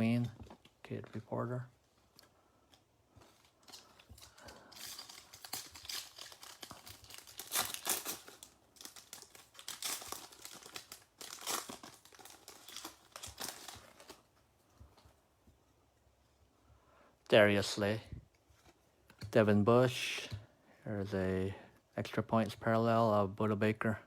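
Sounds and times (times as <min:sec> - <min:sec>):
plastic wrapper crinkling and tearing: 0:02.0 - 0:14.4.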